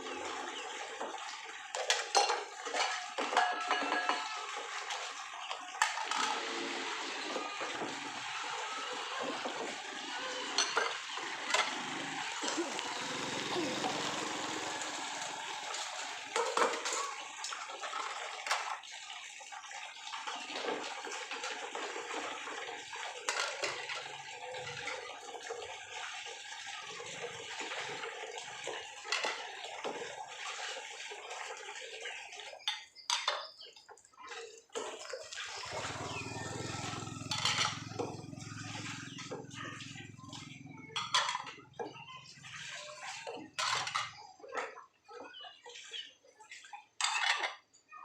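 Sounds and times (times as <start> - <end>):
tap water running into sink: 0.0 - 44.2
crockery and utensils clinking: 1.8 - 4.6, 10.5 - 12.7, 37.3 - 39.2, 40.9 - 41.6.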